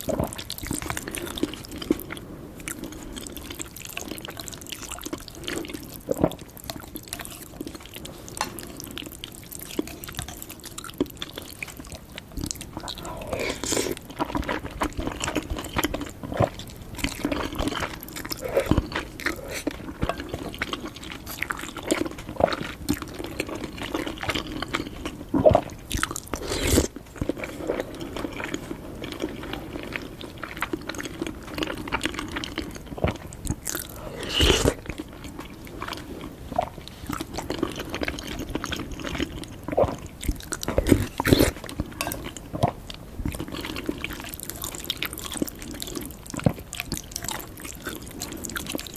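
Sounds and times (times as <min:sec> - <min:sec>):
slurping: 0:12.8 - 0:14.0, 0:25.5 - 0:28.2, 0:33.7 - 0:35.0
wet chewing and biting: 0:24.2 - 0:29.2, 0:30.5 - 0:36.0.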